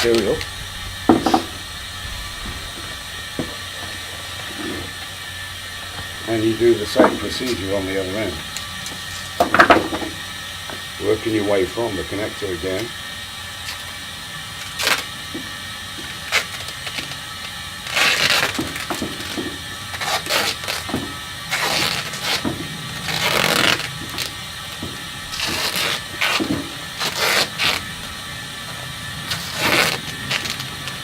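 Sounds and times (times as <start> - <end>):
duct tape ripping off roll: 14.6 - 15.2, 16.2 - 24.3, 25.3 - 27.9, 29.3 - 31.0.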